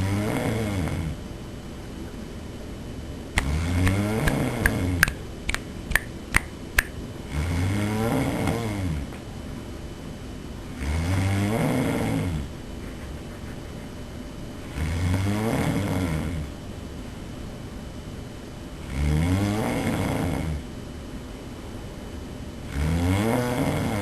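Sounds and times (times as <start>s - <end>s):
person snoring loudly: 0.0s - 1.2s, 3.4s - 5.1s, 7.3s - 9.1s, 10.8s - 12.5s, 14.7s - 16.5s, 18.8s - 20.6s, 22.7s - 24.0s.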